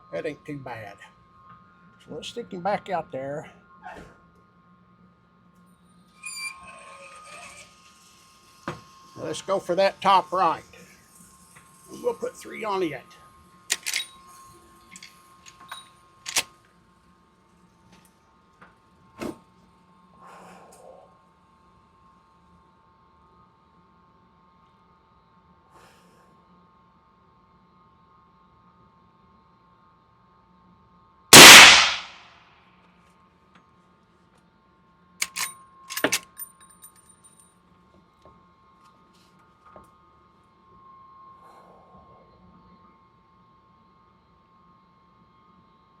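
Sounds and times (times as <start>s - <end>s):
rifle lever clicking: 13.7s - 14.0s, 31.4s - 32.1s, 35.2s - 36.2s
suppressed rifle shot: 31.4s - 32.2s.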